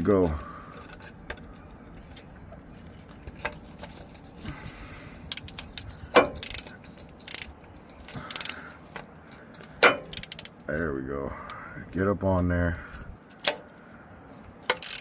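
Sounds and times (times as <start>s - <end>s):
socket wrench clinking on metal: 5.3s - 10.6s, 14.6s - 15.0s.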